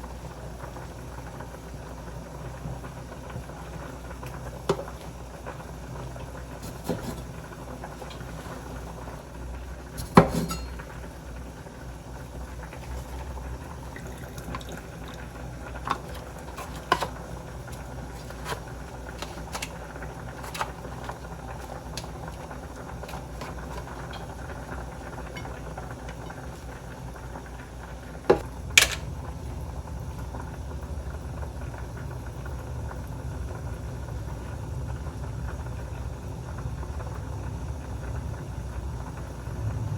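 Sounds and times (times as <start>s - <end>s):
dishes and cutlery clinking: 10.0s - 10.9s.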